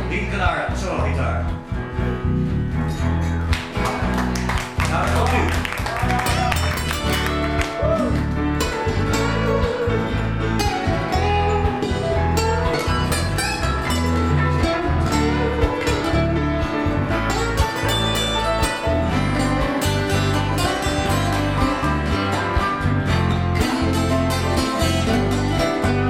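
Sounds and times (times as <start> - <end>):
bass notes: 0.0 - 26.0
electric guitar: 1.4 - 26.0.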